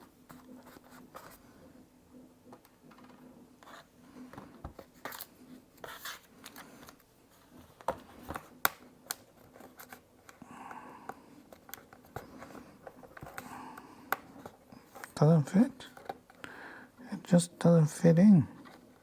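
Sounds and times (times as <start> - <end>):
soft scraping and rustling: 0.0 - 1.7.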